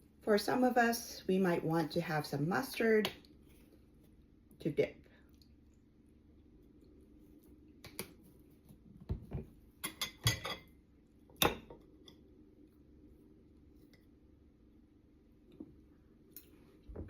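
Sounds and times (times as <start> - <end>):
low steady hum: 0.0 - 17.0
dishes and cutlery clinking: 9.8 - 10.7.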